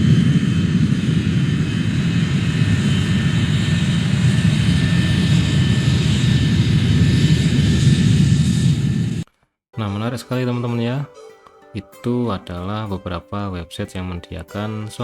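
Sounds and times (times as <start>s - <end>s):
aircraft engines rumbling: 0.0s - 9.2s.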